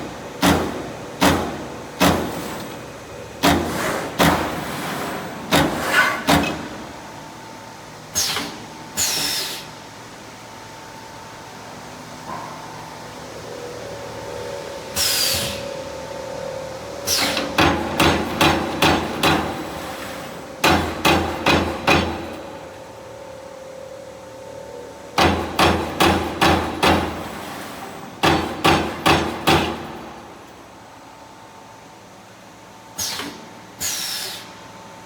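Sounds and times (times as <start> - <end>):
steady machine hum: 0.0 - 33.8
punch press punching sheet metal: 3.4 - 4.7, 17.1 - 19.7, 20.6 - 22.6, 25.2 - 27.3, 28.2 - 30.3.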